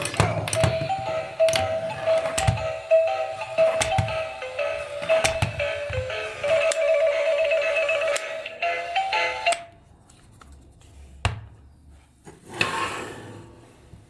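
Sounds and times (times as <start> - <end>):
simple electronic melody: 0.0 - 9.6.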